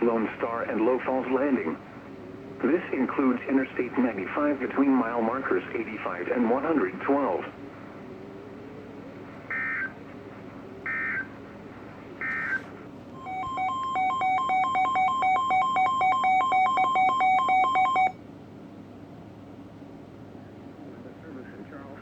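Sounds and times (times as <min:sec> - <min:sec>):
pulsing two-tone alert signal: 0:13.2 - 0:18.2.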